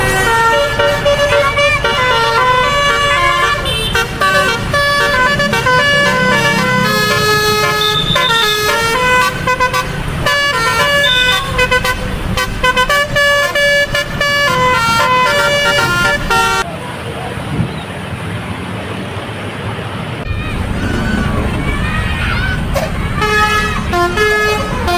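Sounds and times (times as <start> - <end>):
multi-tone air horn melody: 0.0 - 16.6, 23.2 - 24.9
low rumble: 20.2 - 24.0.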